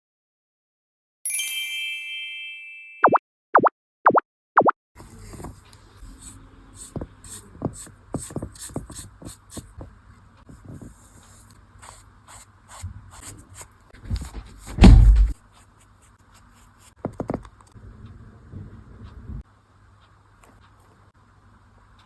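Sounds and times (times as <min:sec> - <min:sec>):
cartoon bloop sound effects: 0:03.0 - 0:04.7
loud low thump: 0:14.8 - 0:15.4.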